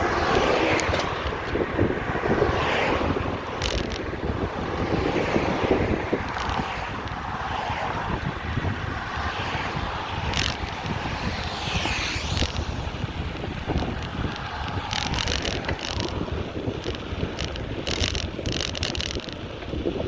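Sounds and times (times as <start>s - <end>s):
street traffic: 0.0s - 20.0s
wind noise on microphone: 0.0s - 20.0s
short rattles and clicks: 0.3s - 1.6s, 3.2s - 4.9s, 6.1s - 7.2s, 10.2s - 11.1s, 12.2s - 19.6s.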